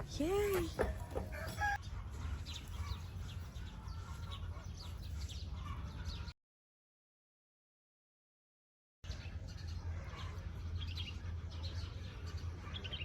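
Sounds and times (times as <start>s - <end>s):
small birds chirping: 0.0s - 6.3s, 9.1s - 13.0s
poultry clucking: 0.0s - 6.4s.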